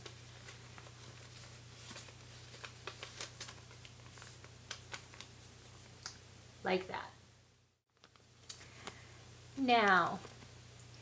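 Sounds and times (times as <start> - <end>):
paper crinkling and folding: 0.0 - 6.0, 7.9 - 9.1.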